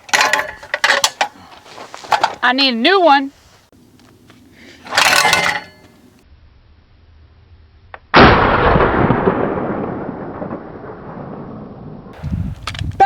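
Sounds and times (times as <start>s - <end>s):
shotgun shot echoing: 8.2s - 11.5s.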